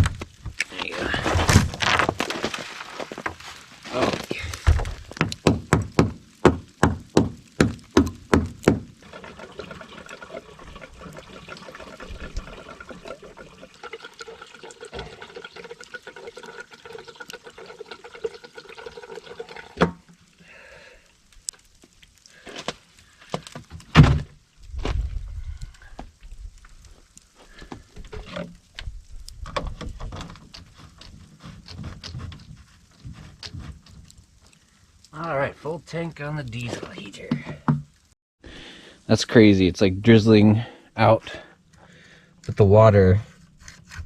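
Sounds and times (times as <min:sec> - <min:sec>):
fuel pouring into tank: 0:09.0 - 0:21.1.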